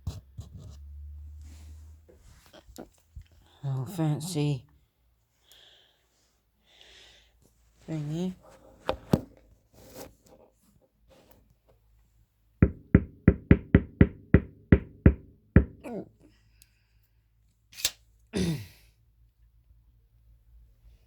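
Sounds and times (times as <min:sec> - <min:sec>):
knocking on subwoofer: 0:12.6 - 0:15.8
sharp click: 0:17.8 - 0:18.0.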